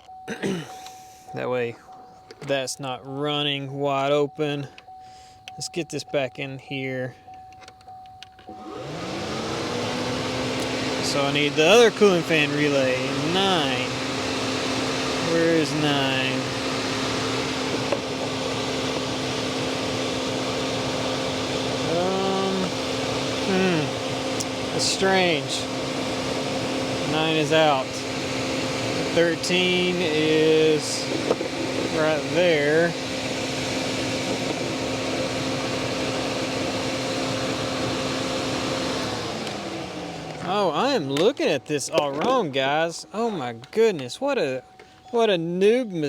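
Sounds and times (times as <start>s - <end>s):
electric fan whirring: 8.5s - 43.5s.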